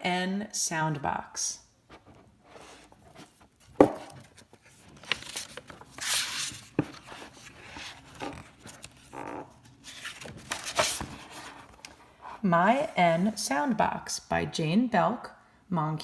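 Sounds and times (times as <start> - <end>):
paper pages rustling: 1.9 - 13.4.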